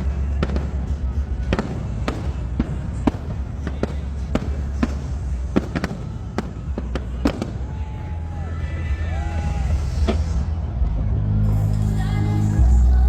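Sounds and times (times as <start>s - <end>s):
fireworks bangs and cracks: 0.0s - 8.0s
steady low rumble: 0.0s - 13.0s.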